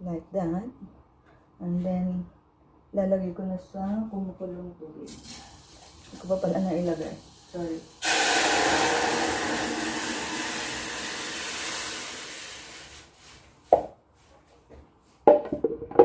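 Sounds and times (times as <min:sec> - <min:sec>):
water boiling and bubbling: 0:05.2 - 0:13.2.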